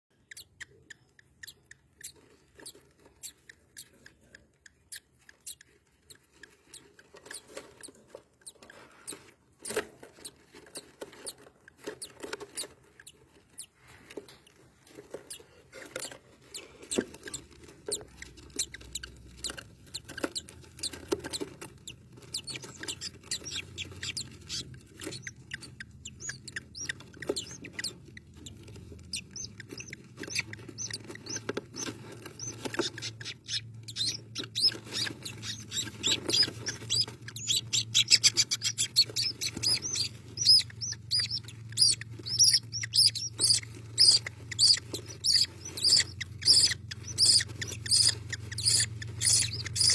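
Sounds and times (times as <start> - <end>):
bird chick squeaking: 0.1 - 49.9.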